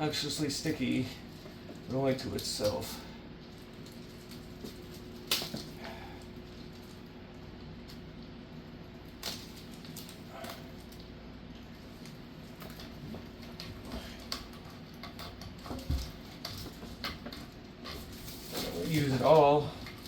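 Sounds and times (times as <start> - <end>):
faint steady hum: 0.0 - 20.0
tape clicks and rustles: 1.2 - 20.0.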